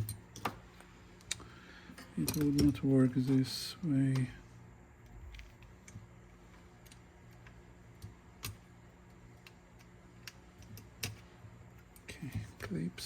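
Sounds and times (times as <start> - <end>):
small metal parts clicking: 1.2 - 3.5, 5.0 - 13.0.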